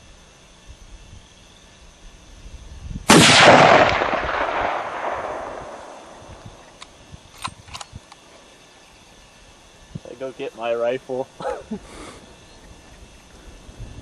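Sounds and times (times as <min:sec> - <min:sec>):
rifle shot: 0:03.1 - 0:06.6
rolling echo: 0:03.1 - 0:06.8.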